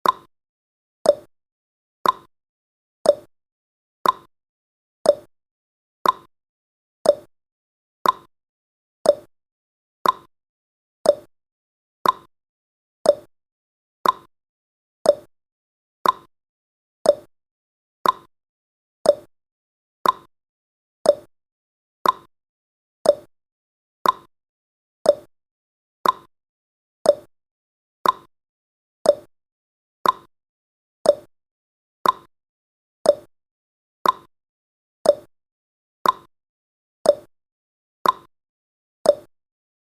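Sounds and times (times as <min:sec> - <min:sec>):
clock ticking: 0:02.0 - 0:02.3, 0:04.0 - 0:04.3, 0:06.0 - 0:06.3, 0:08.0 - 0:08.3, 0:10.0 - 0:10.3, 0:12.0 - 0:12.3, 0:14.0 - 0:14.3, 0:16.0 - 0:16.3, 0:18.0 - 0:18.3, 0:20.0 - 0:20.3, 0:21.1 - 0:21.3, 0:22.0 - 0:22.3, 0:24.0 - 0:24.3, 0:26.0 - 0:26.3, 0:28.0 - 0:28.3, 0:29.1 - 0:29.3, 0:30.0 - 0:30.3, 0:31.1 - 0:31.3, 0:32.0 - 0:32.3, 0:33.1 - 0:33.3, 0:34.0 - 0:34.3, 0:35.1 - 0:35.3, 0:36.0 - 0:36.3, 0:38.0 - 0:38.3.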